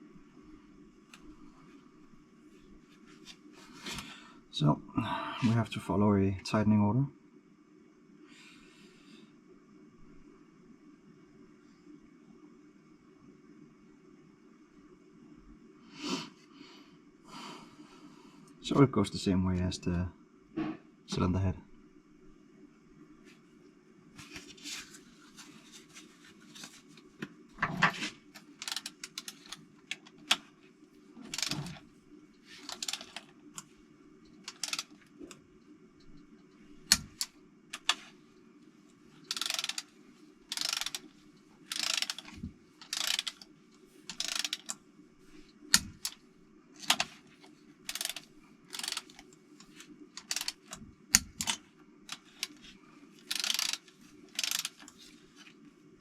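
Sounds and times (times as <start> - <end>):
steady low hum: 0.0 - 56.0
ratchet wrench clicking: 28.6 - 29.6, 31.3 - 31.8, 32.6 - 33.3, 34.5 - 34.9, 39.3 - 39.9, 40.5 - 41.0, 41.7 - 43.4, 44.1 - 44.8, 47.9 - 49.2, 50.2 - 50.8, 53.2 - 54.9.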